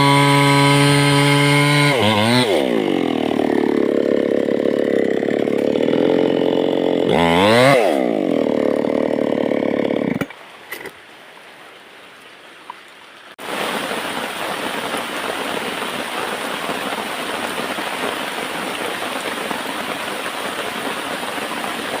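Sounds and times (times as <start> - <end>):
small chainsaw engine running: 0.0 - 10.3.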